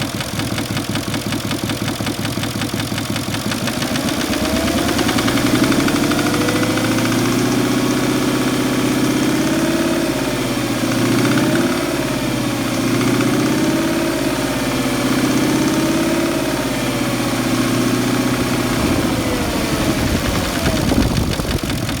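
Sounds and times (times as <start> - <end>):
car engine idling: 0.0 - 14.7, 15.6 - 22.0.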